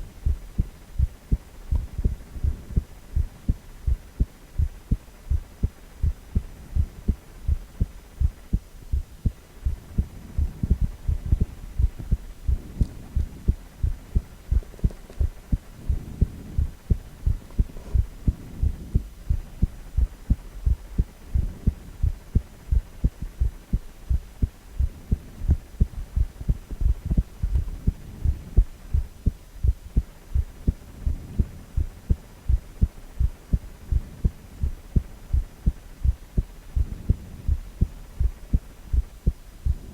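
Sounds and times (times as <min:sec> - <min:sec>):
heartbeat thuds: 0:00.0 - 0:39.9.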